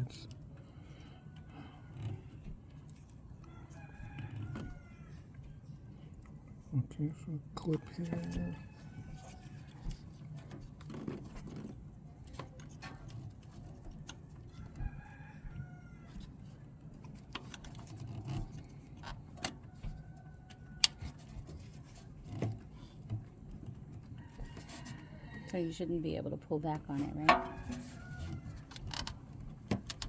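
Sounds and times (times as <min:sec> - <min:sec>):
rooster crowing: 0:03.4 - 0:05.4, 0:07.8 - 0:10.0, 0:14.5 - 0:16.4, 0:24.2 - 0:25.6, 0:27.3 - 0:29.0
car parts clicking and knocking: 0:16.1 - 0:24.6, 0:27.2 - 0:30.0.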